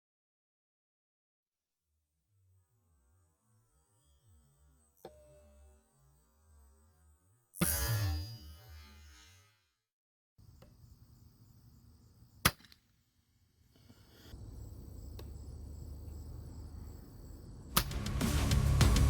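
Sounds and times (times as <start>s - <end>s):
faint click: 15.1s - 15.4s
air rifle shot: 17.7s - 18.1s
music: 17.7s - 19.0s.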